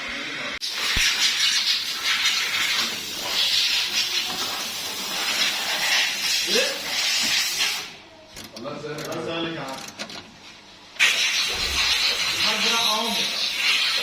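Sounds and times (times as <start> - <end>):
loud hiss of escaping gas: 11.0 - 14.0.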